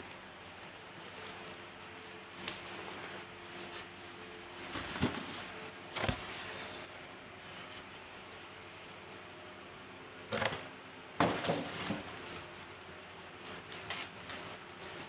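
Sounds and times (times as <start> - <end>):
sharp knocks on box: 11.2 - 12.1.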